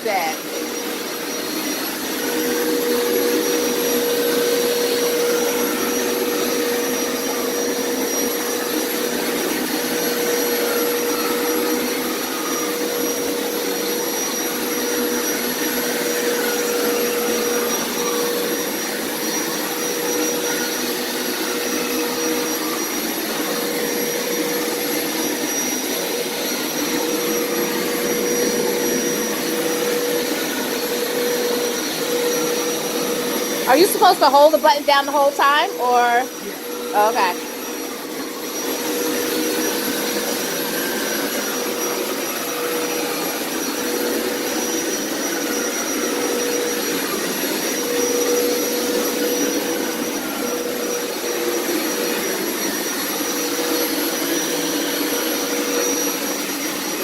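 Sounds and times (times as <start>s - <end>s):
carpet cleaner running: 0.0s - 57.0s.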